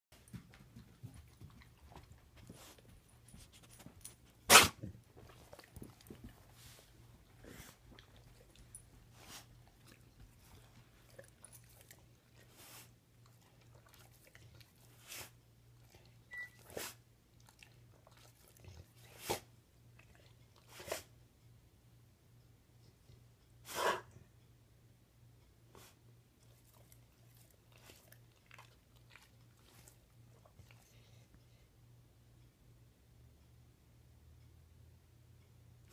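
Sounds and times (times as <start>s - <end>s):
dog coughing: 4.5s - 4.9s.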